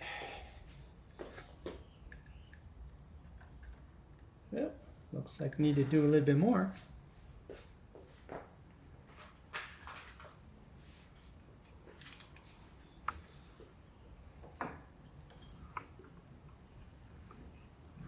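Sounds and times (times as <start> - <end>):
tools clicking and tapping: 11.1 - 13.4, 14.4 - 17.6.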